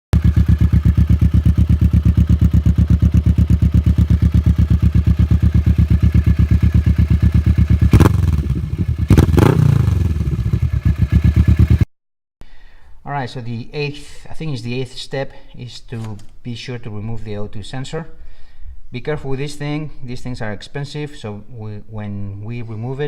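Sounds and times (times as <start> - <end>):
motorcycle engine idling: 0.2 - 11.8
motorcycle throttle blips: 0.2 - 11.8.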